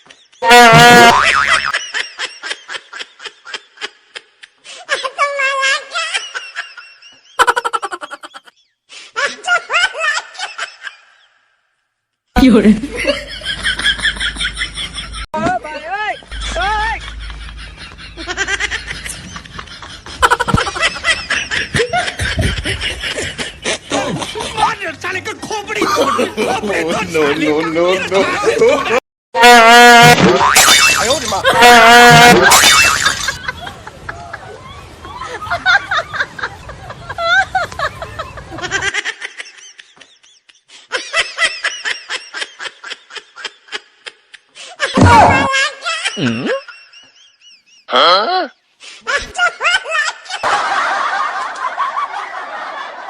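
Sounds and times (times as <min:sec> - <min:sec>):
snickering and chuckling: 0:16.3 - 0:24.6, 0:35.2 - 0:47.9.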